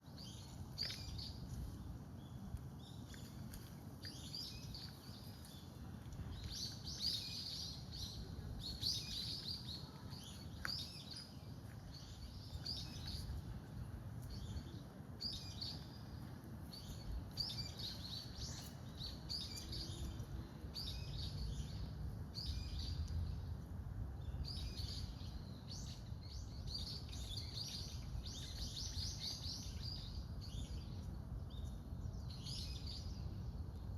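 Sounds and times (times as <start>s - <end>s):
small birds chirping: 0.0s - 33.9s
steady low rumble: 0.4s - 27.2s.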